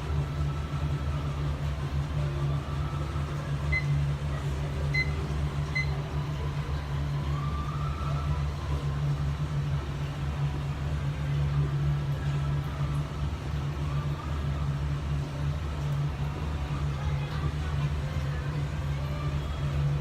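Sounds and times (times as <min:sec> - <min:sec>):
faint wavering siren: 0:00.0 - 0:20.0
short high beeps: 0:03.7 - 0:04.0, 0:04.9 - 0:05.9.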